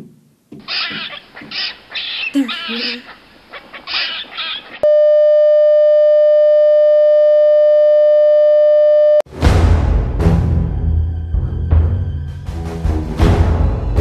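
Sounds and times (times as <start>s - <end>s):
dramatic music: 9.3s - 14.0s.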